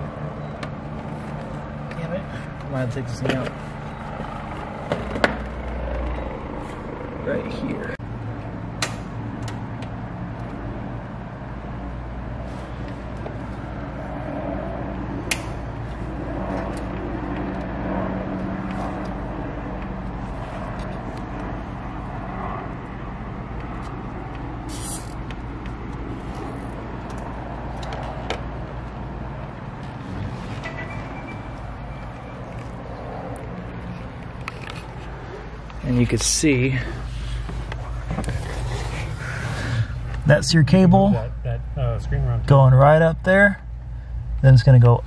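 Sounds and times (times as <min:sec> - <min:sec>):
vehicle engine humming: 0:00.0 - 0:45.0
sharp clicks in cab: 0:15.2 - 0:15.5.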